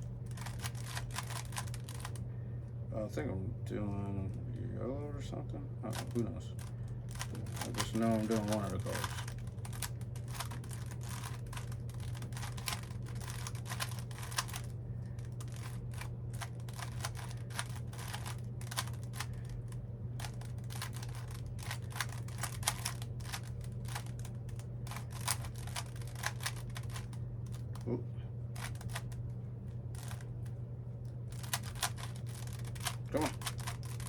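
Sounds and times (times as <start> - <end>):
low hum: 0.0 - 34.0
puzzle cube clicking: 0.4 - 2.2, 5.9 - 14.7, 15.4 - 19.3, 20.2 - 27.8, 31.4 - 34.0.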